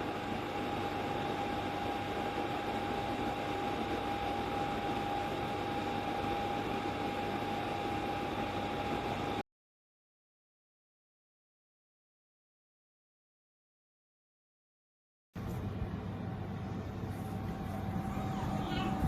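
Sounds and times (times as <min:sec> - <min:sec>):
dehumidifier fan rush and whine: 0:00.0 - 0:09.4, 0:15.4 - 0:19.0.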